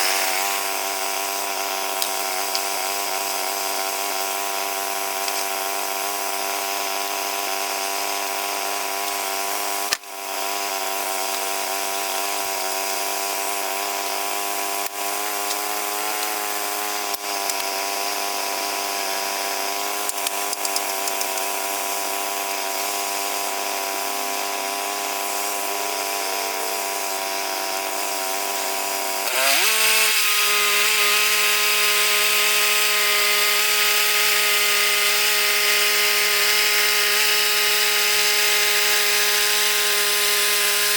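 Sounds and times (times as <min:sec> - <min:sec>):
saw blade cutting wood: 0:00.0 - 0:40.9
sawmill engine running: 0:00.0 - 0:40.9.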